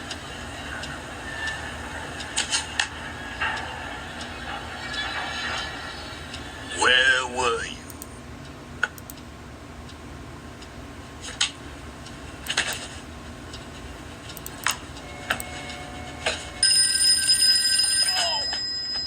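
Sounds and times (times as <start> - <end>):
telephone ringing: 15.1 - 19.0.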